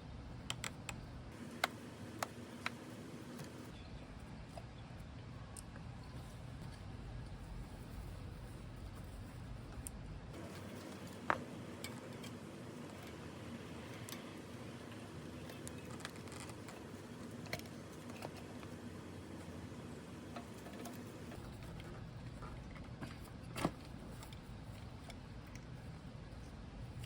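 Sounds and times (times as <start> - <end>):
steady low background noise: 0.0 - 27.0
sharp clicks and taps: 0.5 - 3.6.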